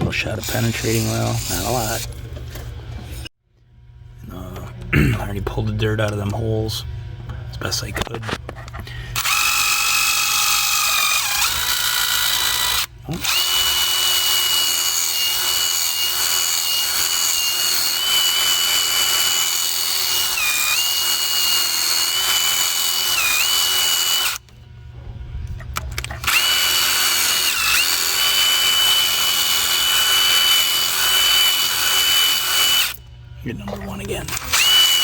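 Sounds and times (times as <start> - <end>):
electric drill whine: 0.0 - 2.6, 9.2 - 24.6, 25.8 - 33.0, 33.7 - 35.0.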